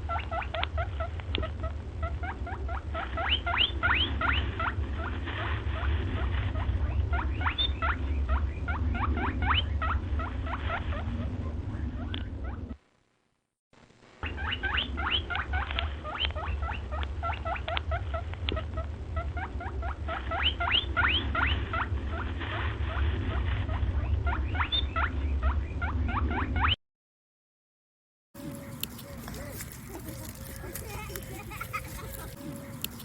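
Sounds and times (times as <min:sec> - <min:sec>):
small animals squeaking: 0:00.0 - 0:12.8, 0:14.2 - 0:26.8, 0:28.4 - 0:33.0
steady low hum: 0:00.0 - 0:26.7, 0:28.4 - 0:33.0.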